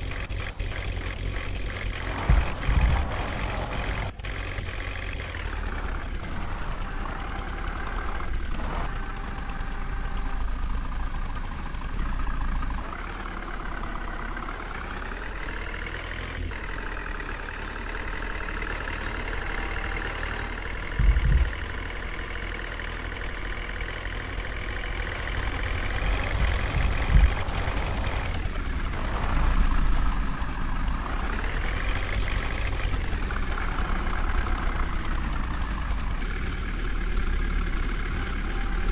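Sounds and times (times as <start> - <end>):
diesel engine revving: 0.0 - 38.9
heavy low thumps: 2.0 - 4.2, 21.0 - 21.8.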